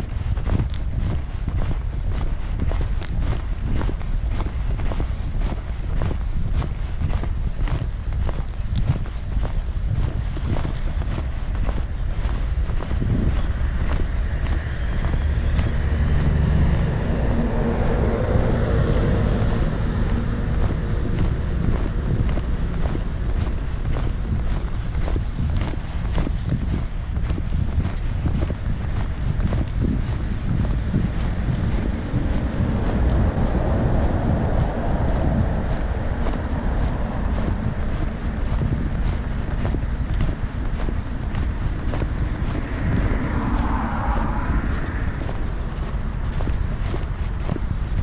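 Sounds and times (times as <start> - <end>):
footsteps on pavement: 0.0 - 48.0
wind buffeting microphone: 0.0 - 48.0
vehicle passing: 10.0 - 48.0.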